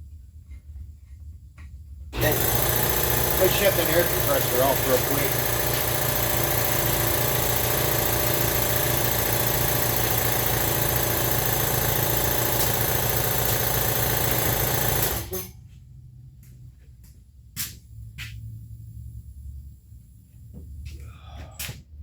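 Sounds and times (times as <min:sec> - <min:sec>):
air compressor running: 0:02.1 - 0:15.7.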